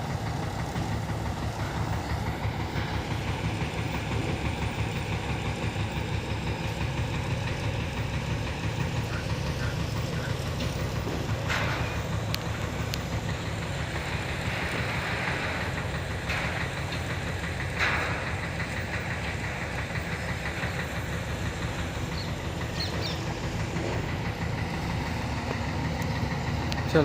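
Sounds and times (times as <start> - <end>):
engine running low: 0.0 - 27.0.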